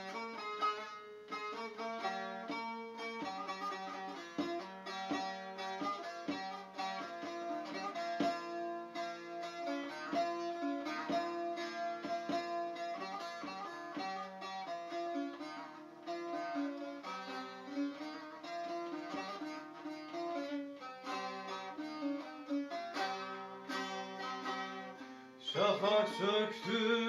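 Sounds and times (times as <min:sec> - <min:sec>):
rhythmic accompaniment: 0:00.0 - 0:26.9
plucked string melody: 0:00.0 - 0:27.0.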